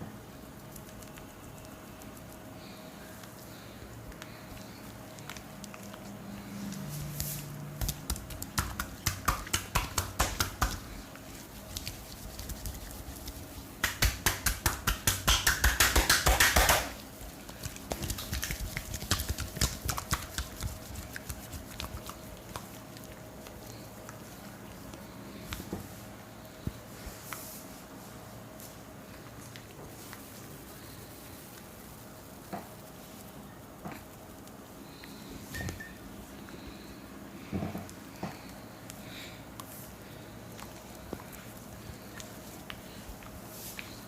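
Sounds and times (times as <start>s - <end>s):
hands slapping on skin: 7.1s - 11.0s, 11.6s - 22.2s.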